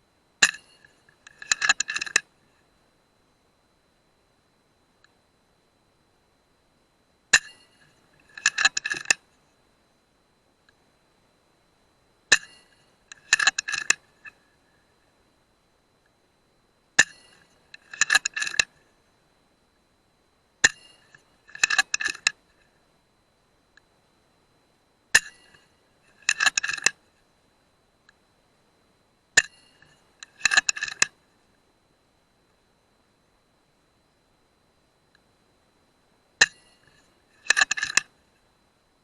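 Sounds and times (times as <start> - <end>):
faint high whine: 0.0 - 39.0
metallic clicks of rifle action: 0.4 - 2.3, 8.2 - 9.2, 12.3 - 14.4, 17.0 - 18.7, 20.6 - 22.4, 25.2 - 27.0, 29.4 - 31.1, 36.4 - 38.1.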